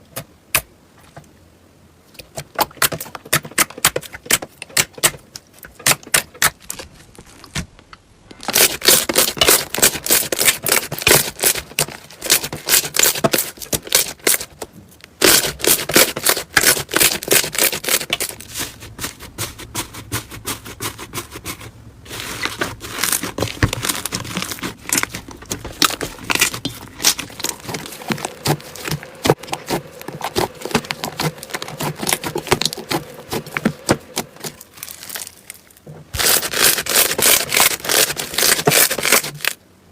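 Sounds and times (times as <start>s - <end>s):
slime squeezed crackling: 22.1s - 39.6s.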